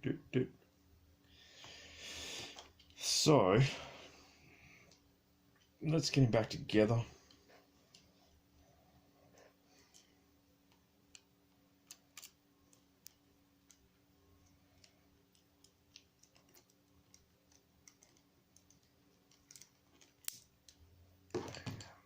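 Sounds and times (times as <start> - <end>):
plastic toy parts clicking: 11.1 - 13.8, 14.8 - 20.8.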